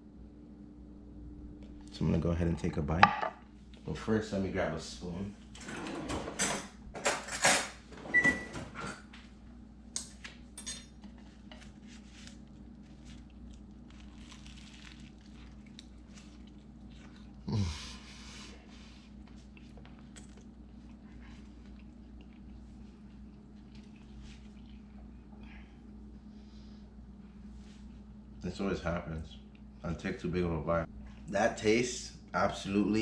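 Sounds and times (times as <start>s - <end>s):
steady low hum: 0.0s - 33.0s
spoon and dishes clinking: 10.0s - 11.0s.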